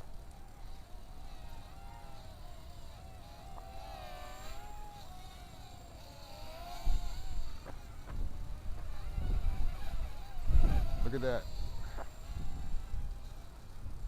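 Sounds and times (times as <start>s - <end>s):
quadcopter motors whining: 0.0s - 14.0s
wind buffeting microphone: 6.6s - 14.0s.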